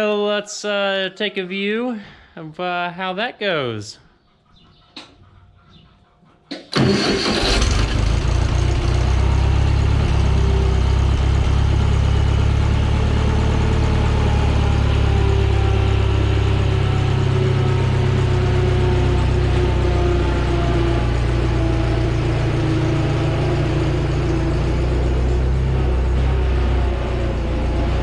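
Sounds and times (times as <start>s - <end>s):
skid steer engine running: 6.8s - 28.0s.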